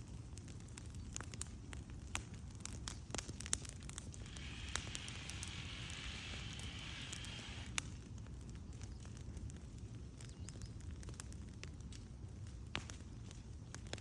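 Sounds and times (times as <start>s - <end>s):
fire popping: 0.0s - 14.0s
wood fire crackling: 0.0s - 14.0s
steady hiss: 3.7s - 8.2s.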